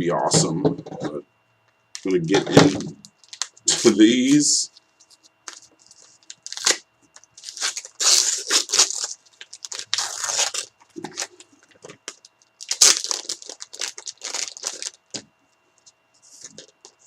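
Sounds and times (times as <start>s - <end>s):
packaging tearing and crinkling: 2.0s - 4.5s, 5.4s - 15.2s.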